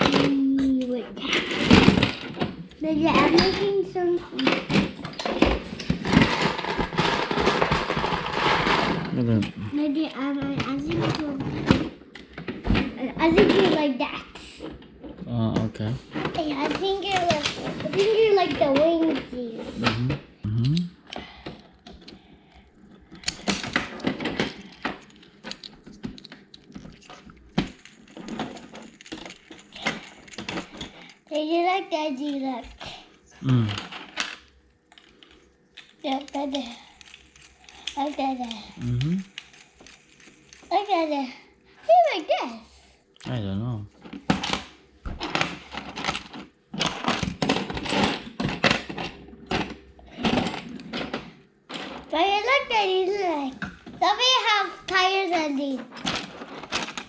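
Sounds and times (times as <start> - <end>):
plastic bricks clattering: 0.0 - 13.9, 14.7 - 31.4, 32.2 - 41.3, 44.0 - 57.0
plastic bricks clicking: 22.9 - 31.2, 32.3 - 40.7.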